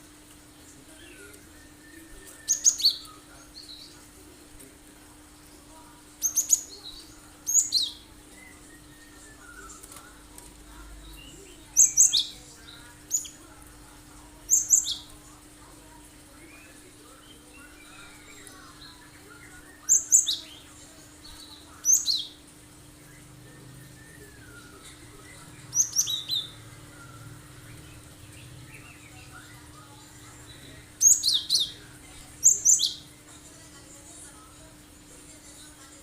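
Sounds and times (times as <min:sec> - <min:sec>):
faint steady hum: 0:00.0 - 0:36.0
bird singing high chirps: 0:00.9 - 0:04.0, 0:06.2 - 0:10.2, 0:11.0 - 0:13.4, 0:14.5 - 0:15.3, 0:16.4 - 0:33.1.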